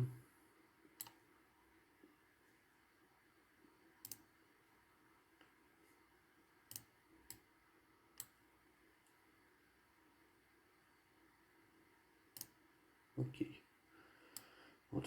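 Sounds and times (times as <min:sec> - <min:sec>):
computer mouse clicks: 0:01.0 - 0:01.2, 0:04.0 - 0:04.3, 0:06.7 - 0:07.5, 0:08.1 - 0:08.4, 0:12.3 - 0:12.6.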